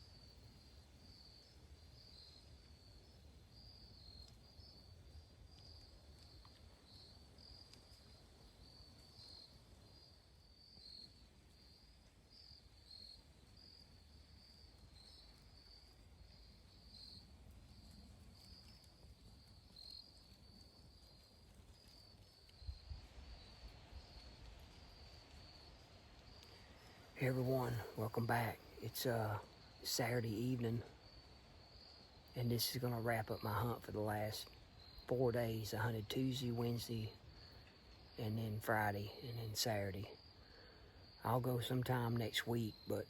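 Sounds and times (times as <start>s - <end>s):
crickets chirping: 0.0s - 43.0s
low rumble of wind: 0.0s - 43.0s.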